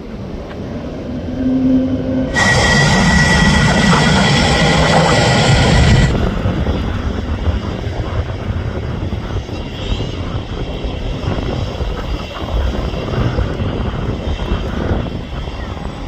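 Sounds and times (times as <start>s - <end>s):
high whining tone: 0.0s - 7.4s
jet engines running: 0.0s - 9.5s
wind buffeting microphone: 0.0s - 16.0s.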